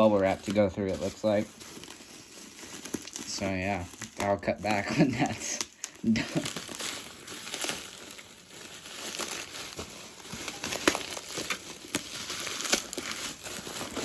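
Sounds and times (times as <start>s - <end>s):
bubble wrap crinkling: 0.0s - 14.0s.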